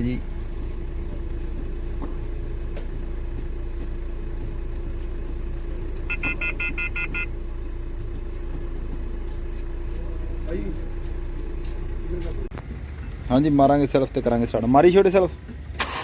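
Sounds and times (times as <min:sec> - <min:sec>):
car engine idling: 0:00.0 - 0:16.0
short electronic beeps: 0:06.1 - 0:07.4.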